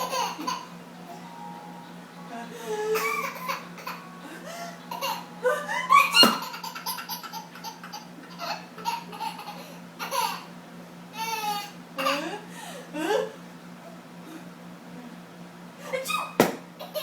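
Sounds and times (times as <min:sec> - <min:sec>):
baby laughing: 0:00.0 - 0:00.8, 0:02.6 - 0:10.5, 0:16.8 - 0:17.0
steady low hum: 0:00.0 - 0:17.0.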